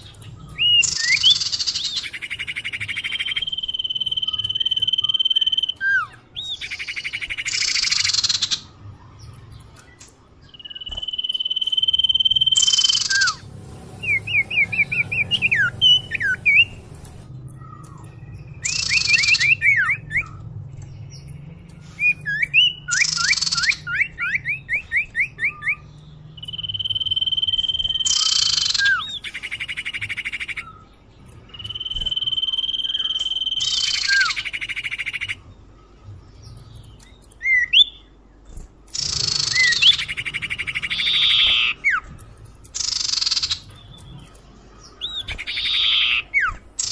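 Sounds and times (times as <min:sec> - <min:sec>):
bird chirps rising: 0:00.0 - 0:08.7, 0:10.4 - 0:35.6, 0:39.0 - 0:42.1, 0:42.8 - 0:46.9
harsh raspy bird notes: 0:10.6 - 0:20.4, 0:39.0 - 0:42.1
bird whistles: 0:14.0 - 0:16.8, 0:39.0 - 0:42.1, 0:45.0 - 0:46.9.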